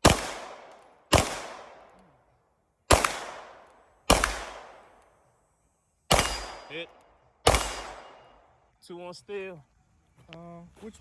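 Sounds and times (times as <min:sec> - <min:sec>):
handgun shots echoing: 0:00.0 - 0:02.0, 0:02.9 - 0:05.1, 0:06.1 - 0:08.5.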